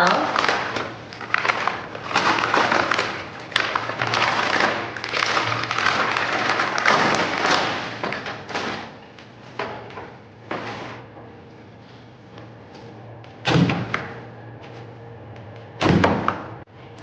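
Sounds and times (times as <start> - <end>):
plastic packaging crinkling: 0.0 - 8.9.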